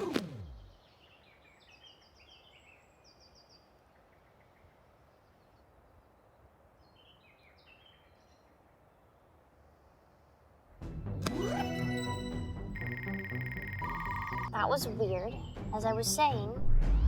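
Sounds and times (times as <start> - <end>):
small birds chirping: 0.0 - 9.9, 12.8 - 14.5
faint outdoor hiss: 0.6 - 10.9.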